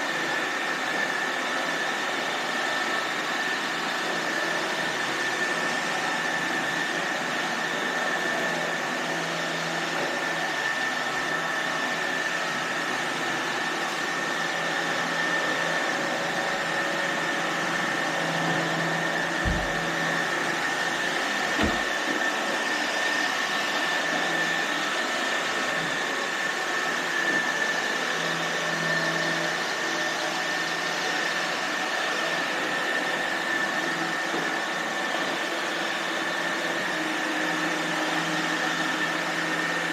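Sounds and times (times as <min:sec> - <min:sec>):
robot vacuum whirring: 0:10.6 - 0:28.4.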